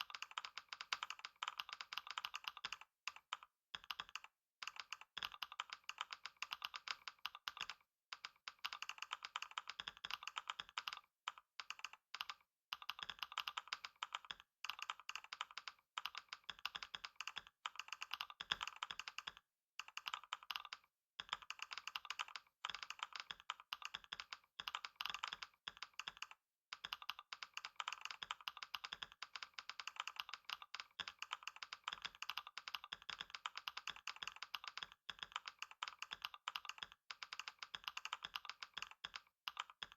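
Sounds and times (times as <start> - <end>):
fast typing on computer keyboard: 0.0 - 39.9.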